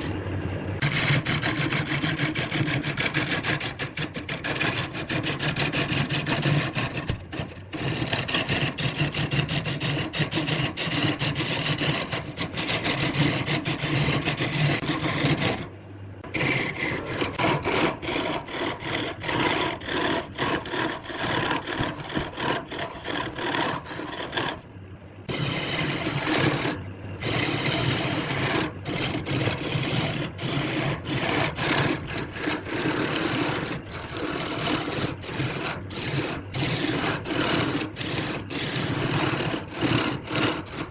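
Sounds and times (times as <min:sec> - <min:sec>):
tool scraping spinning wood: 0:00.0 - 0:00.2, 0:00.8 - 0:40.9
wood lathe motor hum: 0:00.0 - 0:00.2, 0:00.8 - 0:24.7, 0:25.3 - 0:40.9.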